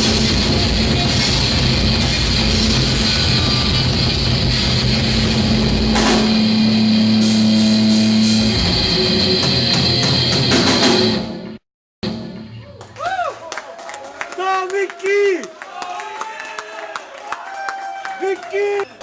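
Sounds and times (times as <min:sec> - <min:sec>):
distorted electric guitar: 0:00.0 - 0:12.6
bass guitar: 0:00.0 - 0:12.8
drum kit: 0:00.0 - 0:12.9.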